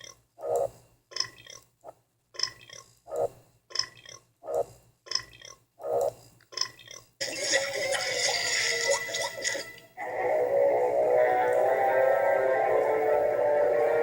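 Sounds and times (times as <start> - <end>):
music: 7.8 - 14.0.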